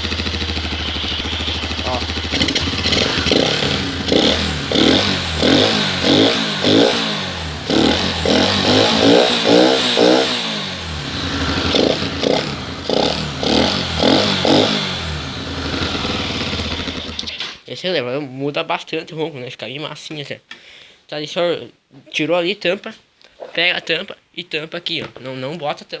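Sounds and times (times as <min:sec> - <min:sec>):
motorcycle engine revving: 0:00.0 - 0:17.6.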